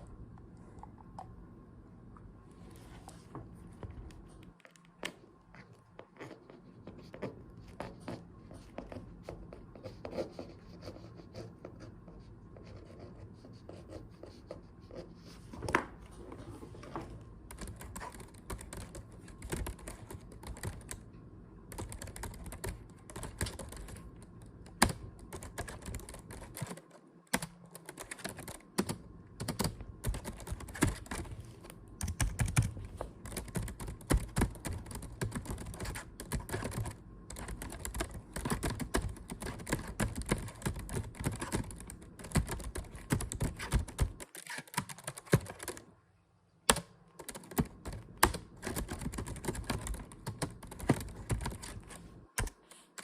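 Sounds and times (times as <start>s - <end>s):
computer keyboard typing: 17.5s - 21.1s, 21.7s - 31.4s, 32.0s - 45.9s, 46.7s - 53.0s.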